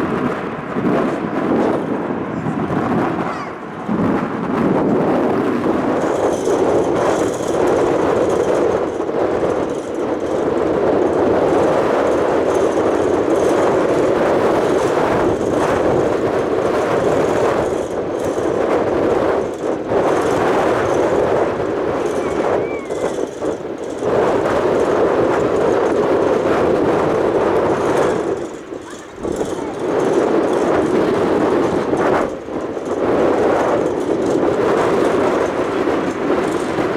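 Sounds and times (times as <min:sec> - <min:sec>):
gusty wind: 0:00.0 - 0:36.9
jet engines rumbling: 0:00.0 - 0:36.9.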